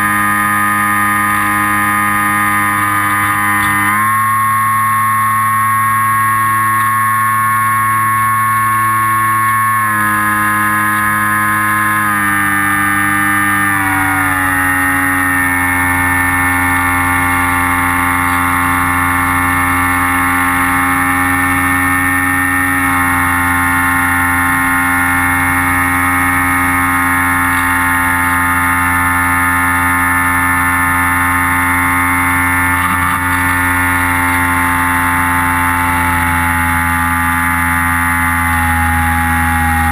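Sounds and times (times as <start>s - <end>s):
model aircraft motor and propeller: 0.0s - 39.9s.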